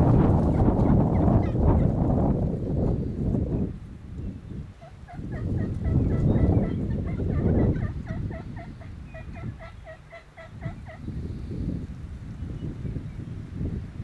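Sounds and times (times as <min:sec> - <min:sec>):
low rumbling noise: 0:00.0 - 0:04.0
turkey yelps: 0:04.8 - 0:11.0.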